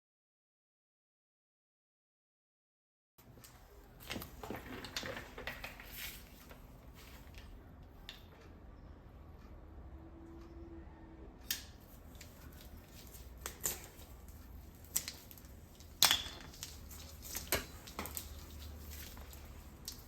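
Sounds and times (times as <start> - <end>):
faint low hum: 6.1 - 20.0
clicks of hand tools and metal parts: 15.0 - 18.5.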